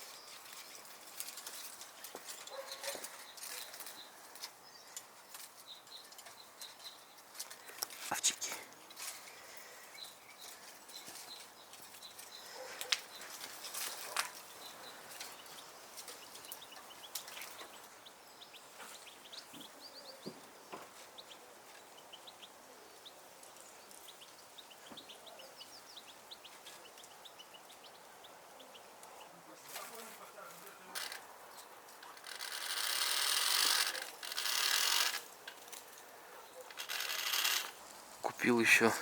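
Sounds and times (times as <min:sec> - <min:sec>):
songbirds chirping and trilling: 0:00.0 - 0:39.0.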